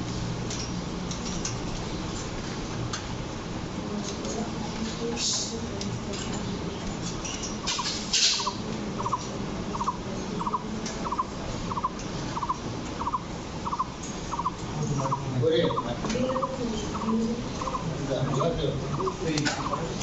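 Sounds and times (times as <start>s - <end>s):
parrot calling: 7.6s - 20.0s
parrot warbling: 7.8s - 20.0s.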